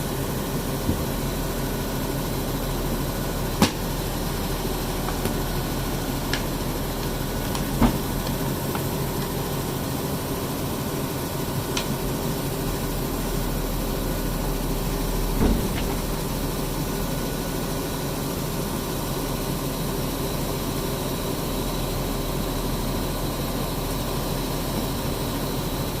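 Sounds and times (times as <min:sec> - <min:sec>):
washing machine humming: 0:00.0 - 0:26.0
dull thump: 0:15.4 - 0:16.1.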